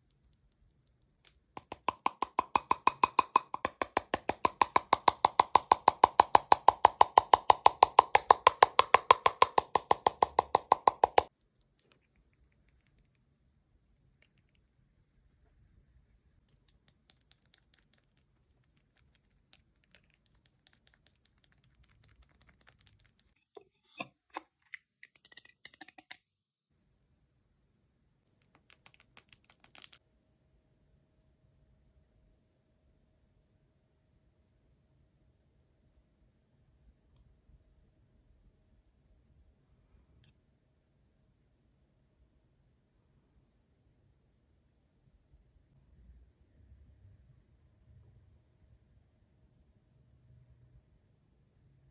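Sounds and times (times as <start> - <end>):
rapid even tapping: 1.6 - 11.3.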